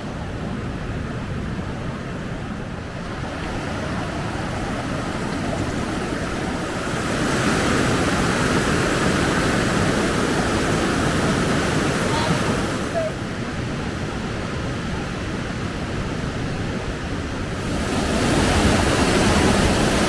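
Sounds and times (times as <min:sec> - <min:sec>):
waterfall rushing: 0:02.9 - 0:13.2, 0:17.6 - 0:20.0.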